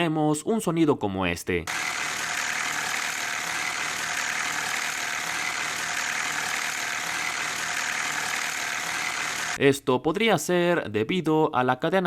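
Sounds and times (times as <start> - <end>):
car engine running: 1.7 - 9.6.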